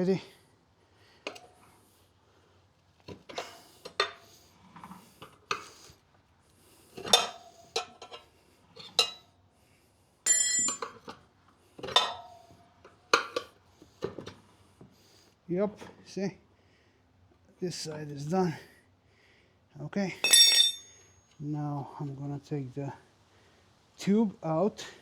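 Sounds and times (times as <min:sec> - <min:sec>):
tire levers clinking on rim: 0:10.3 - 0:11.2, 0:20.2 - 0:21.4.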